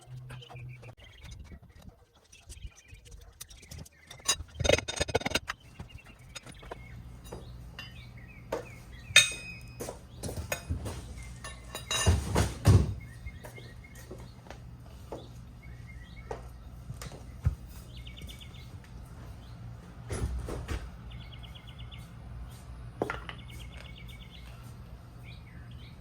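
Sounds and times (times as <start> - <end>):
birds chirping: 0.0 - 12.0, 12.9 - 20.1, 21.0 - 26.0
metallic clanks and knocks: 4.2 - 5.6.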